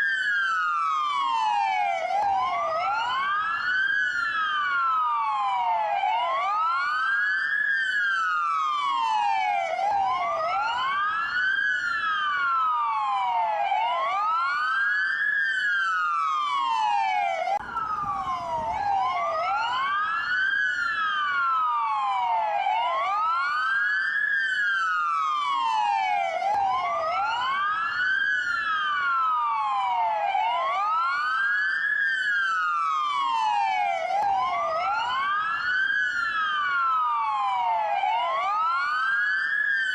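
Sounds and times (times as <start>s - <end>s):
police siren wailing: 0.0s - 39.9s.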